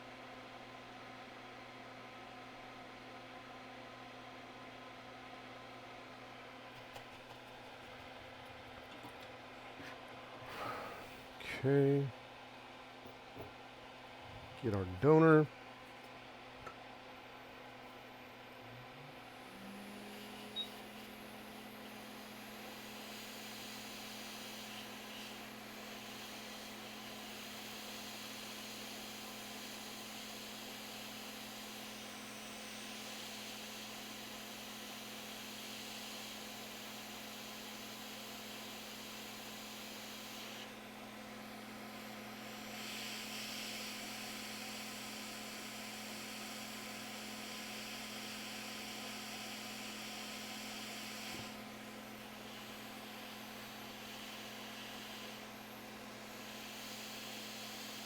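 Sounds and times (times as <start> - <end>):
equipment hum: 0.0 - 27.2, 38.8 - 58.0.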